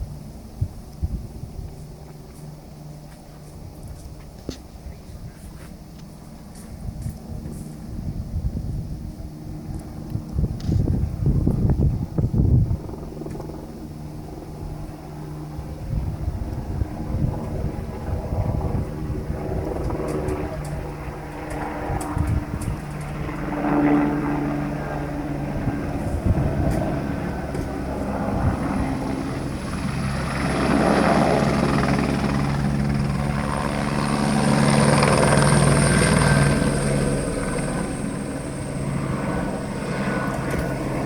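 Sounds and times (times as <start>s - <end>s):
helicopter rotor chop: 9.0s - 41.0s.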